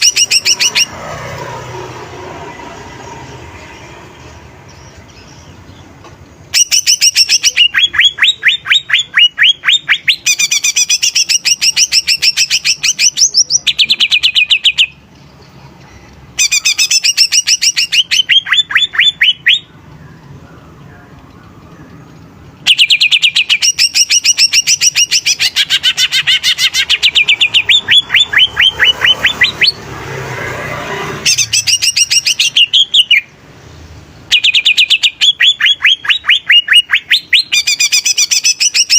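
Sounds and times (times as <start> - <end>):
bird singing whistled notes: 6.5 - 15.0, 16.4 - 22.0, 22.6 - 29.8, 31.3 - 33.3, 34.3 - 38.9.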